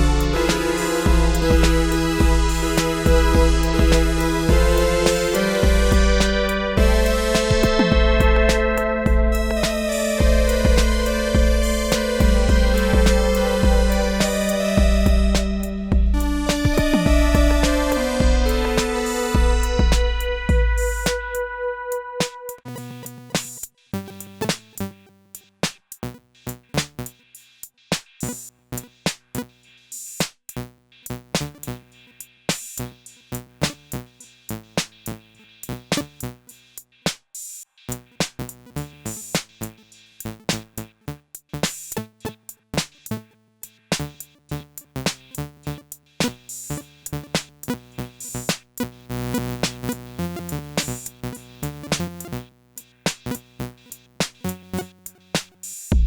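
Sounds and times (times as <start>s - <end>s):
electronic drum beat: 0.0s - 21.6s, 22.2s - 22.6s, 23.4s - 23.7s, 25.4s - 42.0s, 42.8s - 56.0s
synthesizer notes: 0.0s - 22.6s.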